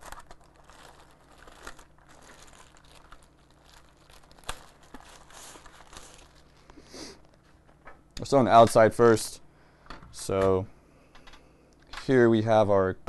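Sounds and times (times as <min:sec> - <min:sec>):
plastic wrapping crinkling: 0:00.0 - 0:07.8.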